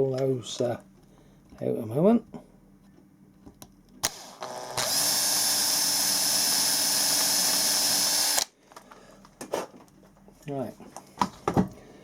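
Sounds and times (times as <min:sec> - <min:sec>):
electric drill whining: 0:04.0 - 0:08.5.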